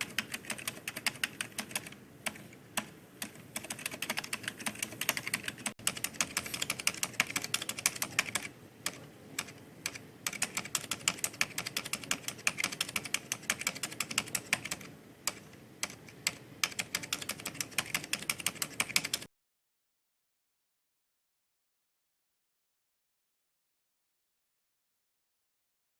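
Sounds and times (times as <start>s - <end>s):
rapid typing on mechanical keyboard: 0.0s - 19.3s.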